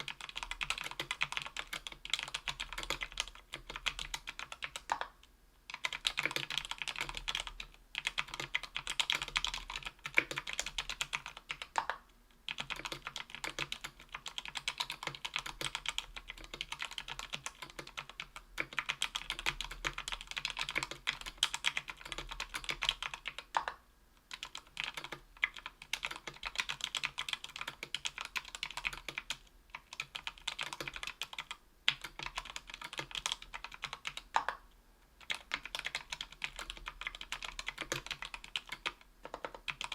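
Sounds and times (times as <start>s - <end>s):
fast typing on mechanical keyboard: 0.0s - 5.1s, 5.7s - 23.7s, 24.3s - 34.6s, 35.2s - 39.9s.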